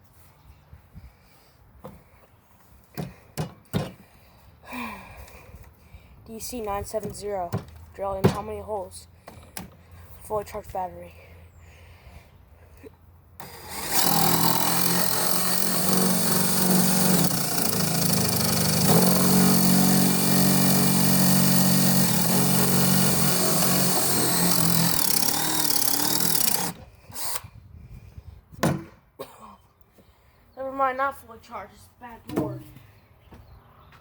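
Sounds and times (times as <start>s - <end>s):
cordless drill drilling: 13.4s - 27.5s.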